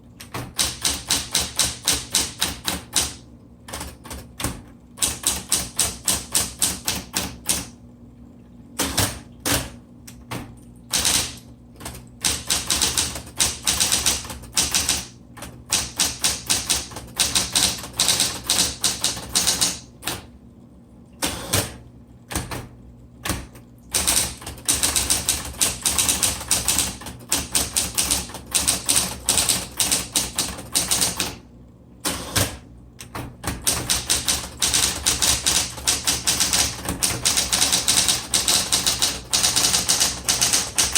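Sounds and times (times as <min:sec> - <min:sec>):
typewriter key strikes: 0:00.2 - 0:03.2, 0:04.4 - 0:07.7, 0:10.9 - 0:11.4, 0:12.2 - 0:15.1, 0:15.7 - 0:19.8, 0:24.0 - 0:31.3, 0:33.4 - 0:40.9
typewriter motor hum: 0:00.2 - 0:07.8, 0:08.8 - 0:09.8, 0:10.4 - 0:20.3, 0:21.2 - 0:40.9.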